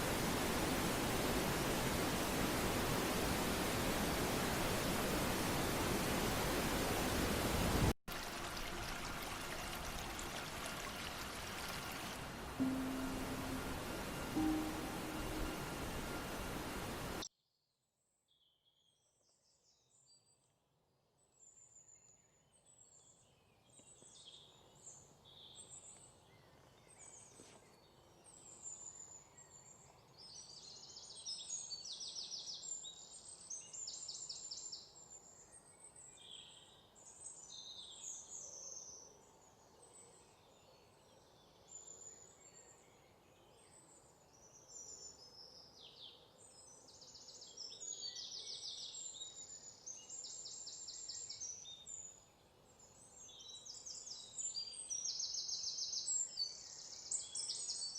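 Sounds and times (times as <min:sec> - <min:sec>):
faint low background rush: 0:00.0 - 0:17.2
songbirds singing and chirping: 0:10.0 - 0:17.2.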